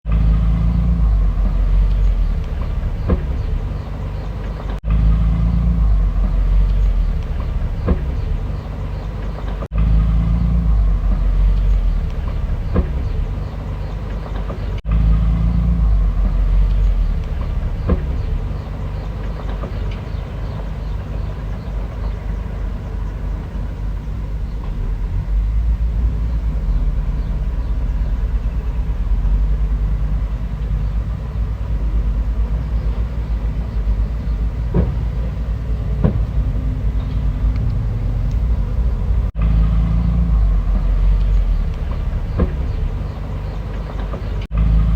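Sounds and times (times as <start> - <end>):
bulldozer engine rumbling: 0.0 - 44.9.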